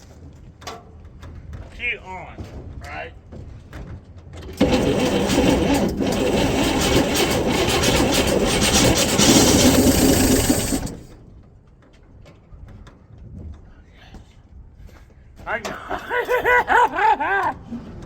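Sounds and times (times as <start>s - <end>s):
engine starter cranking: 4.4s - 11.3s.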